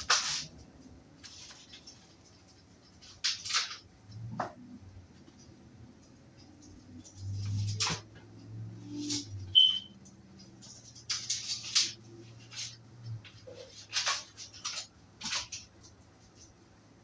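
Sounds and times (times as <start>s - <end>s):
brief high squeak: 9.5s - 10.0s.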